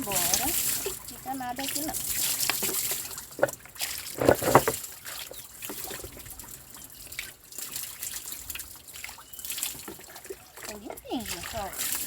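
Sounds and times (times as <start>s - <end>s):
water splashing: 0.0s - 12.0s
water trickling and dripping: 0.0s - 12.0s.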